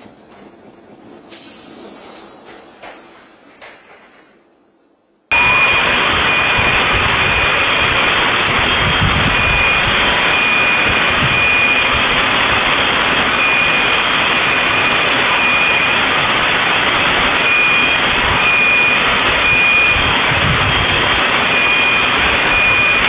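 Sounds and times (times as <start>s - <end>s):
high alarm-like tones: 5.3s - 23.0s
loud steady rushing noise: 5.3s - 23.0s.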